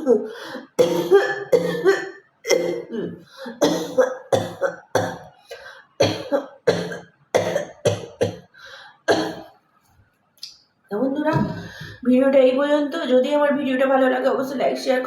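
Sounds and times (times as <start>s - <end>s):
woman coughing: 0.0s - 9.5s.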